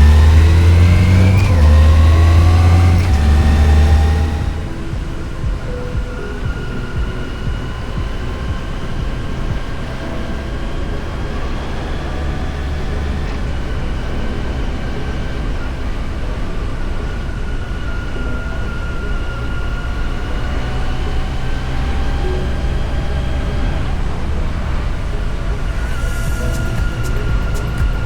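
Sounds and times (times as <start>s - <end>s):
motorcycle engine running: 0.0s - 6.1s
faint steady whine: 0.0s - 28.0s.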